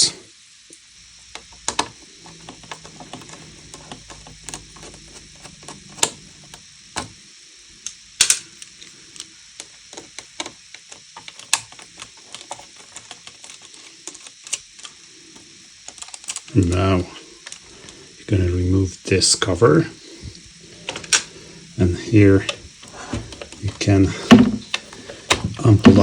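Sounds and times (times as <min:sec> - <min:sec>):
screwdriver metallic clicks: 0:01.3 - 0:07.2.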